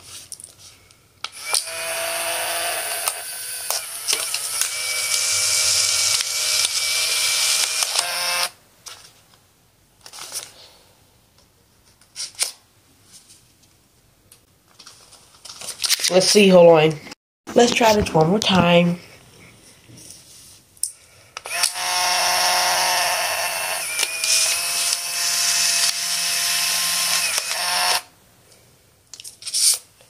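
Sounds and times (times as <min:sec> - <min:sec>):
camera mechanical whir: 0:01.3 - 0:08.6, 0:21.4 - 0:28.1
camera clicks: 0:06.1 - 0:08.5, 0:27.0 - 0:28.0.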